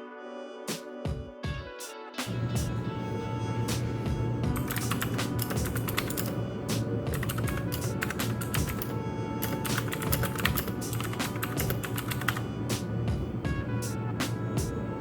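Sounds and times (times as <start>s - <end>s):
background music: 0.0s - 15.0s
mechanical keyboard typing: 4.6s - 6.4s, 7.1s - 12.4s.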